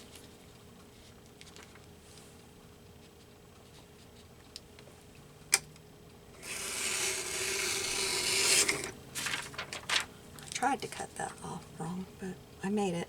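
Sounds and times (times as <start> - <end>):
blade scraping through paper: 6.4 - 10.1.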